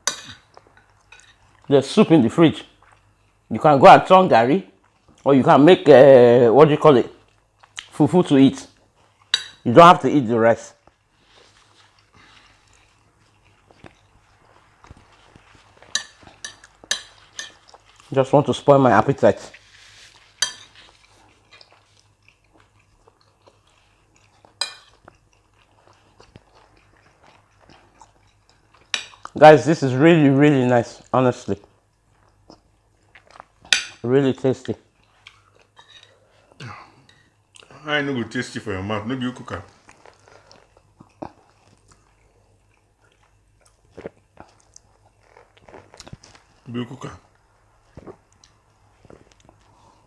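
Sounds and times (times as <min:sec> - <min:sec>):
chewing and biting food: 0:10.9 - 0:18.2, 0:19.5 - 0:29.4, 0:31.0 - 0:33.7, 0:39.7 - 0:46.7
cutlery clinking on a plate: 0:15.9 - 0:17.6, 0:20.4 - 0:20.8, 0:24.6 - 0:25.0.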